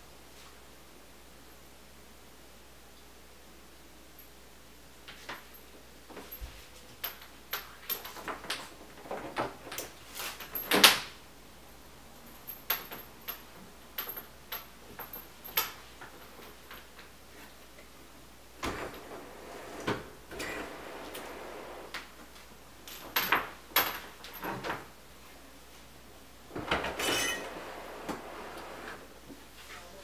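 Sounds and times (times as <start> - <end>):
rustle: 4.1 - 17.8.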